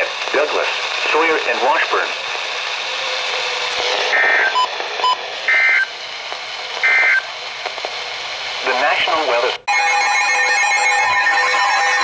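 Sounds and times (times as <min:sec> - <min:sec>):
radio hiss: 0:00.0 - 0:09.7
two-tone warbling data buzzes: 0:06.8 - 0:07.3.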